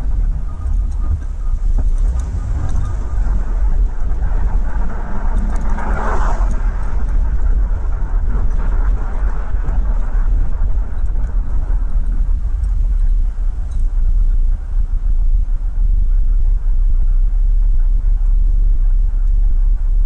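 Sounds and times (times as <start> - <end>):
car engine and road noise: 0.0 - 16.0.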